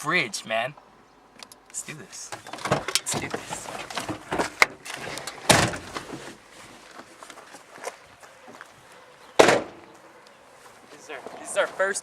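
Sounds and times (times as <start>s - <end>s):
door shutting thud: 5.4s - 6.0s, 9.4s - 9.9s.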